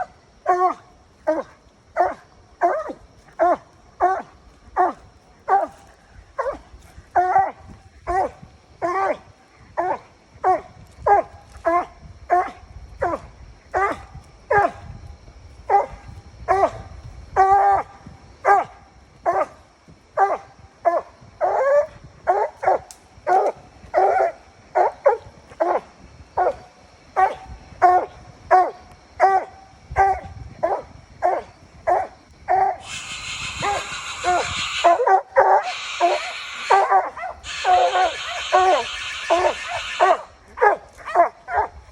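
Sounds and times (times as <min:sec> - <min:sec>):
dog barking: 0:00.5 - 0:05.7, 0:18.5 - 0:19.5, 0:27.2 - 0:41.7
rushing hiss: 0:32.8 - 0:40.3.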